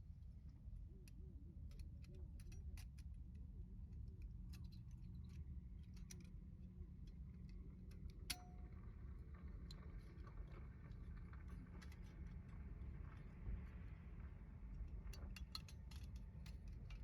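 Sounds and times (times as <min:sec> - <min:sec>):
light clicks of metal gear: 0:00.3 - 0:08.8, 0:14.7 - 0:17.0.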